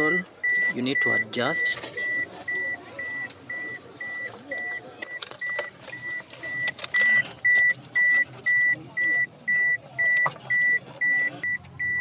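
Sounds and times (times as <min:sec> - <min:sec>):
electronic beeper beeping: 0:00.0 - 0:12.0.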